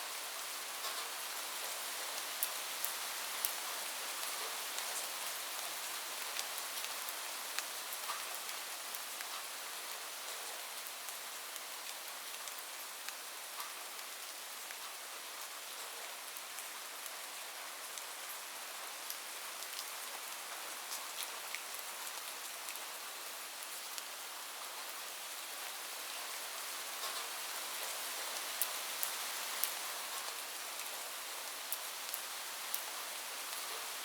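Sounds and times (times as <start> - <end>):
heavy rain on a roof: 0.0 - 34.0.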